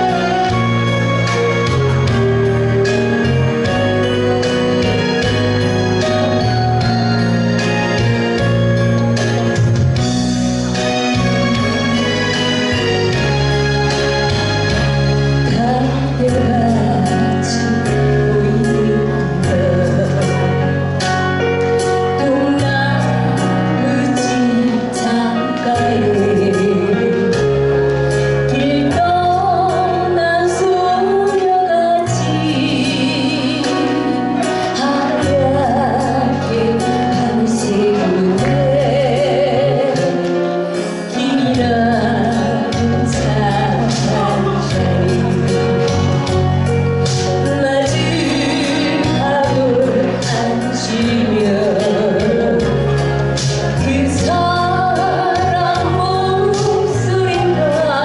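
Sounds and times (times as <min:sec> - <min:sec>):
bass and keyboard: 0:00.0 - 0:58.0
woman singing a slow ballad: 0:14.7 - 0:58.0.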